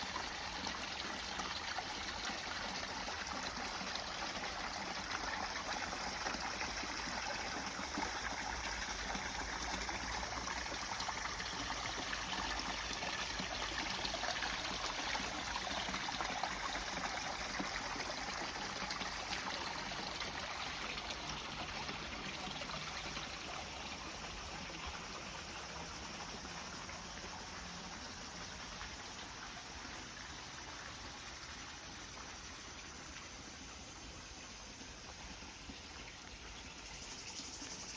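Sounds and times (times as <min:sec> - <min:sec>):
water running and trickling: 0:00.0 - 0:37.9.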